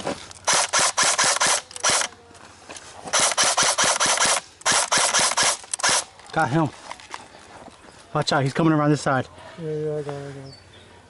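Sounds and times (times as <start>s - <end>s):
airsoft gun firing bursts: 0.4s - 2.1s, 3.1s - 6.1s.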